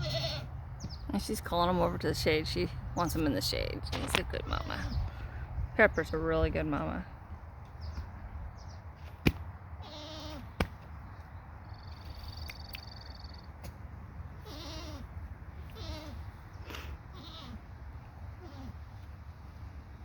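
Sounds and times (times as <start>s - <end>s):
goats bleating: 0.0s - 0.5s, 9.8s - 10.5s.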